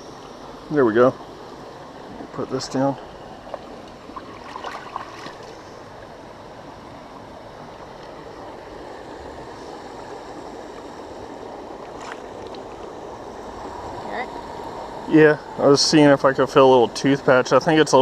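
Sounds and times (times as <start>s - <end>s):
creek water running: 0.0s - 18.0s.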